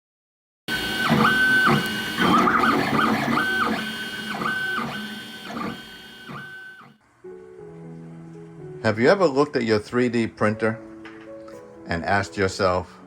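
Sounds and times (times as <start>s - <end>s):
stepper motors whining: 0.7s - 7.0s.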